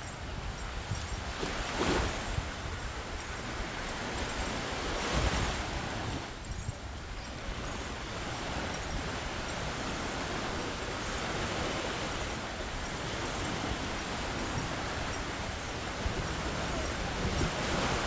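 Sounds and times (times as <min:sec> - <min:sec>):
surf washing onto beach: 0:07.5 - 0:18.0.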